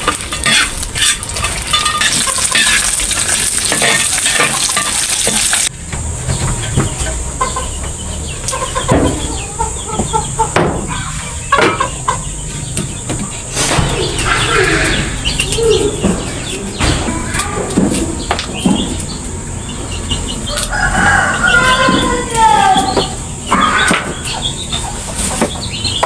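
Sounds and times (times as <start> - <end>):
food sizzling in a pan: 0.0 - 5.7
stirring scrapes: 0.0 - 5.7
chickens clucking: 0.0 - 26.0.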